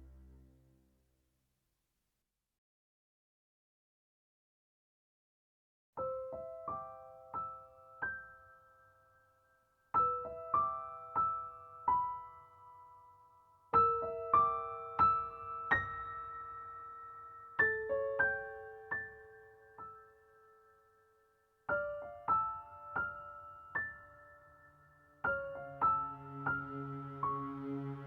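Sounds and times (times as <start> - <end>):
soft piano melody: 6.0 - 28.0.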